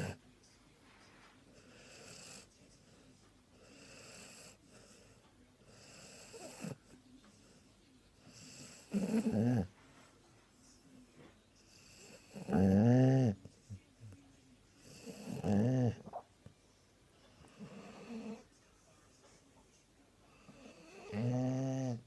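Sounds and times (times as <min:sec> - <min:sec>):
dog snoring: 0:00.0 - 0:00.2, 0:01.6 - 0:02.5, 0:03.6 - 0:07.0, 0:08.2 - 0:09.7, 0:11.7 - 0:13.6, 0:14.8 - 0:16.3, 0:17.3 - 0:18.5, 0:20.3 - 0:22.0.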